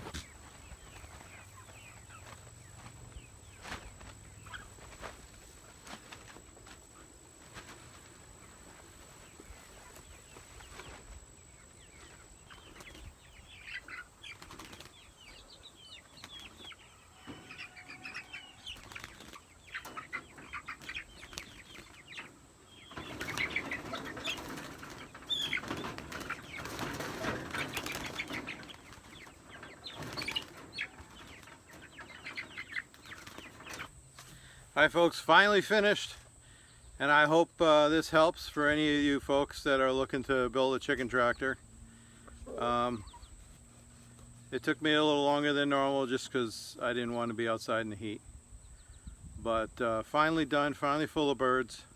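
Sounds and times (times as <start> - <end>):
chickens chirping and peeping: 0.0 - 51.9
wings flapping: 0.9 - 8.8, 12.0 - 15.2, 16.1 - 16.8, 18.0 - 22.3, 22.9 - 34.4.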